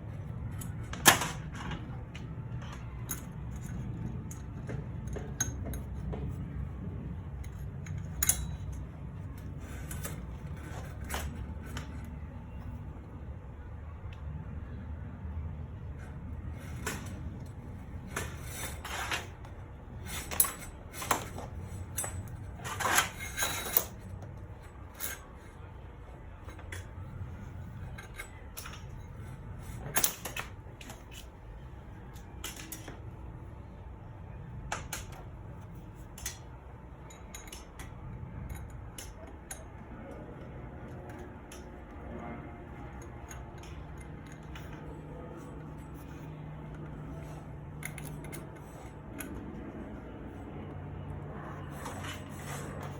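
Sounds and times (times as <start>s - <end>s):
hand tools clanking on metal: 7.4s - 8.9s.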